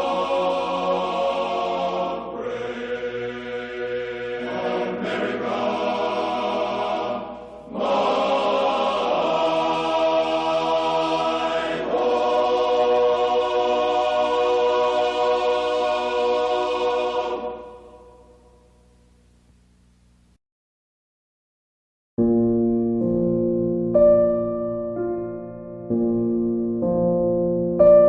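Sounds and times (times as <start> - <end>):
choir singing sustained chords: 0.0 - 18.8.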